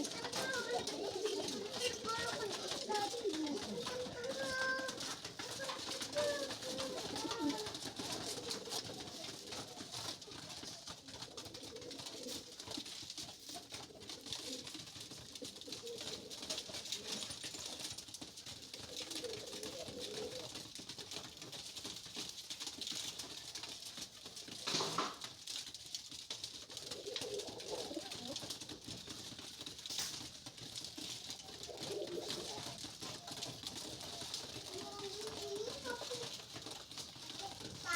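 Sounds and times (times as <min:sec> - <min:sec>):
loud rustling: 0:00.0 - 0:10.8
pigeons cooing: 0:00.0 - 0:13.0, 0:13.6 - 0:21.1, 0:26.6 - 0:37.9.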